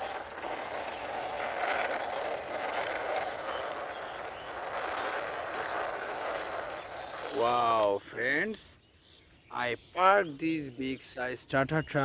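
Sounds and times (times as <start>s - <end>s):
toy truck wheels rolling on ground: 0.0s - 8.0s.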